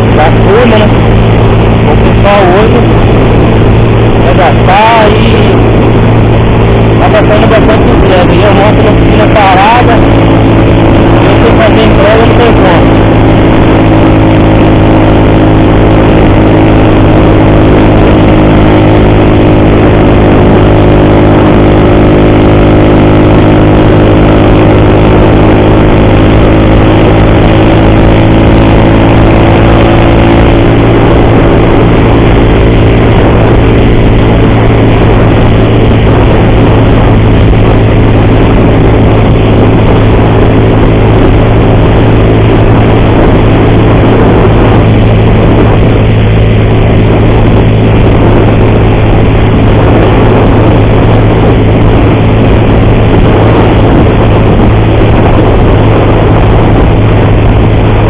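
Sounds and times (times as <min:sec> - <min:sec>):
person talking: 0:00.0 - 0:01.1, 0:01.9 - 0:03.0, 0:04.2 - 0:05.8, 0:07.0 - 0:10.2, 0:10.9 - 0:13.0
motorcycle engine running: 0:00.0 - 0:58.0.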